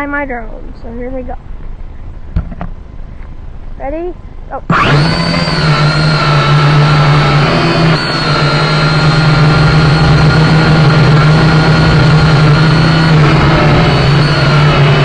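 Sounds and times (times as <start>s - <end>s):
drone motors humming: 4.6s - 15.0s
high whining tones: 4.7s - 15.0s.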